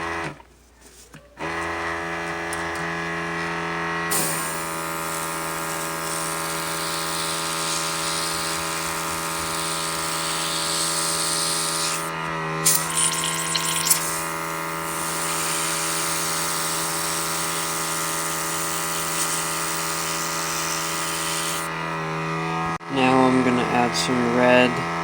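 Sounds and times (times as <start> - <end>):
airbrush compressor humming: 1.5 - 25.0
airbrush spraying hiss: 4.1 - 21.7.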